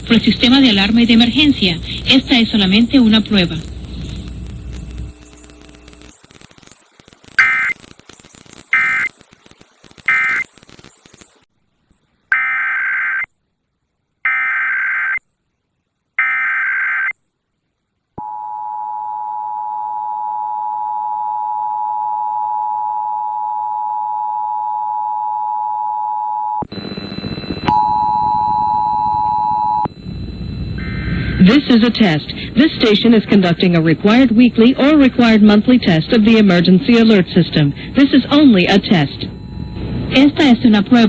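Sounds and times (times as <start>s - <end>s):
noisy break with higher tone: 0.0s - 11.2s, 26.7s - 31.8s
warbling data bursts: 0.0s - 11.5s
digital data chirps: 5.0s - 11.3s.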